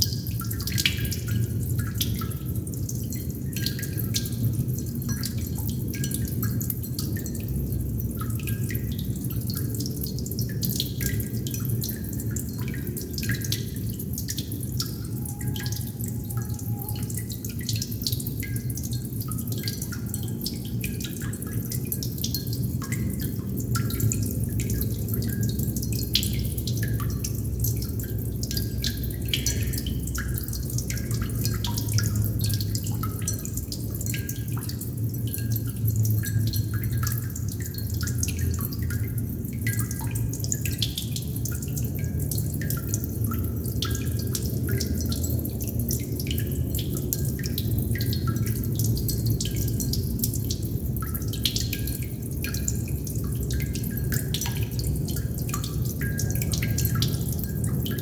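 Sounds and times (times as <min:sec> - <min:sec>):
water droplets plinking: 0:10.4 - 0:45.3.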